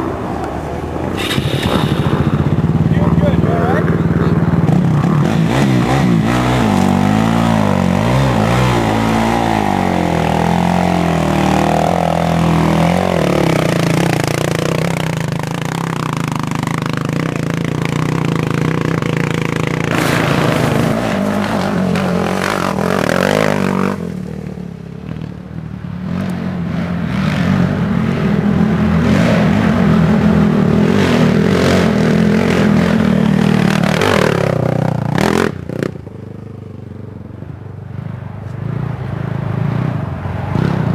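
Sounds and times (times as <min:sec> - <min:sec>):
steady engine note: 0:00.0 - 0:24.8
quad engines revving: 0:00.0 - 0:25.3, 0:26.0 - 0:36.2.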